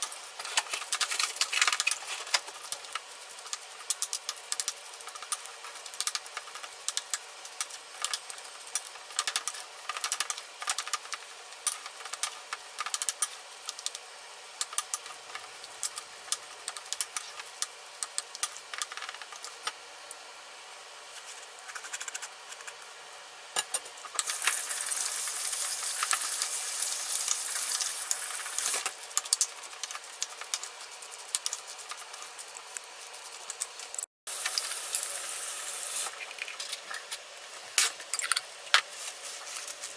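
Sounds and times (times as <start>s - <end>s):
utensils and cookware clattering: 0.0s - 2.9s, 23.6s - 30.6s, 34.3s - 39.9s
loud steady hiss: 34.3s - 36.3s.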